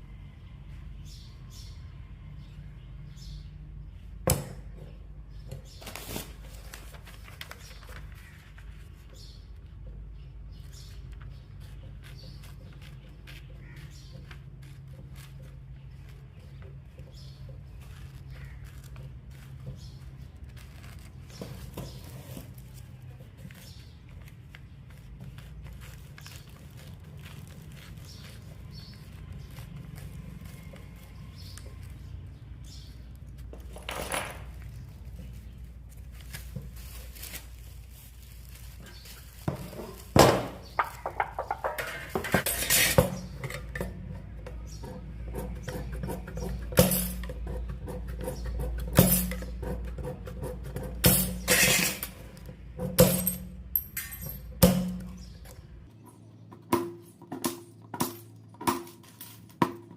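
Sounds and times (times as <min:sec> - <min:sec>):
metal tools clinking: 0:53.0 - 0:55.2.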